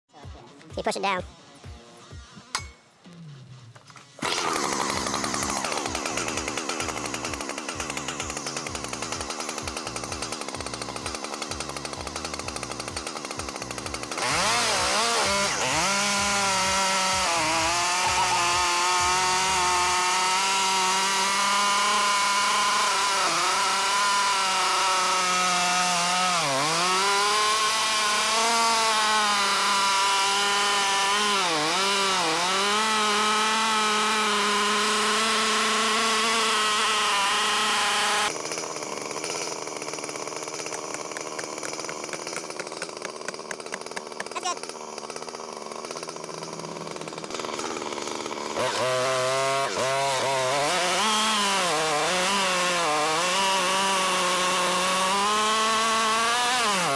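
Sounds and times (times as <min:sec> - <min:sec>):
chainsaw running: 0:03.8 - 0:56.9.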